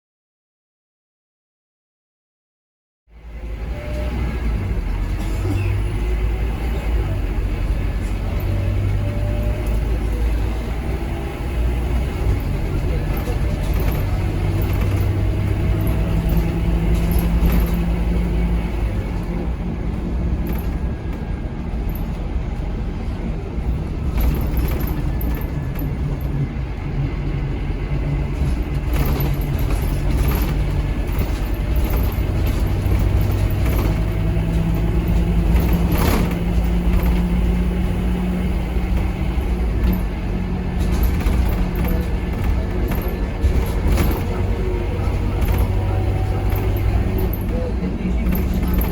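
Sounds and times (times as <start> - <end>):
bus engine: 3.1 - 48.9
clicks and rattles: 28.3 - 38.0, 38.6 - 48.9.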